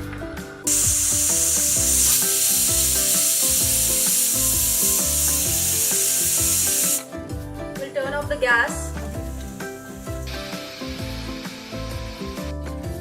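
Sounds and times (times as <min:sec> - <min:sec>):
pressure cooker whistle hiss: 0:00.7 - 0:07.0, 0:10.0 - 0:12.5.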